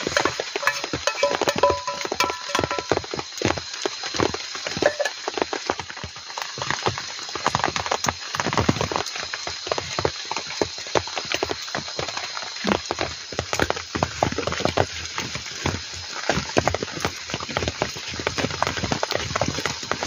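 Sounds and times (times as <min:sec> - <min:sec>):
sharp taps and knocks: 0:00.0 - 0:03.2
rain pattering: 0:00.0 - 0:20.0.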